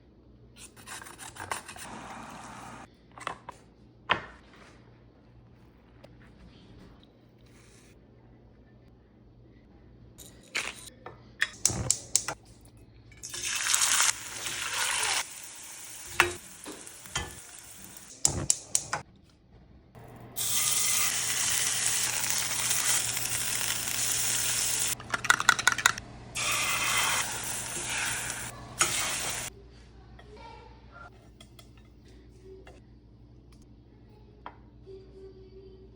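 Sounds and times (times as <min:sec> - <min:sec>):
food sizzling in a pan: 0:13.2 - 0:18.2, 0:20.4 - 0:25.0, 0:26.4 - 0:29.5.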